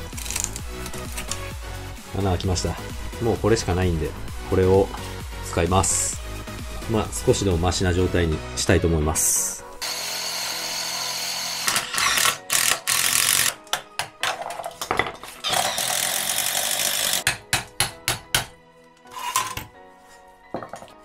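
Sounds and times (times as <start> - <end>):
power tool hissing: 9.8 - 12.7.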